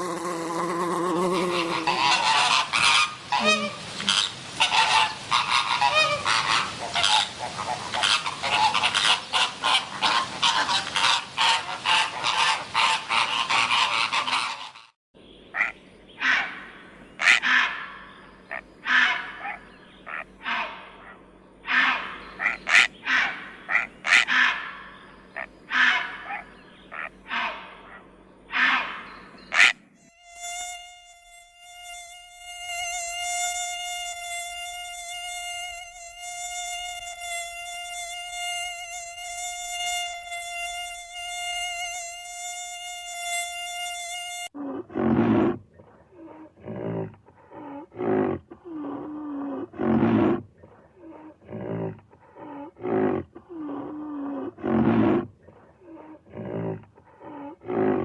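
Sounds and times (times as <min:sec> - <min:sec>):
steady insect buzz: 0:00.0 - 0:02.5, 0:16.7 - 0:44.6
short animal calls: 0:00.0 - 0:04.2, 0:15.5 - 0:30.9.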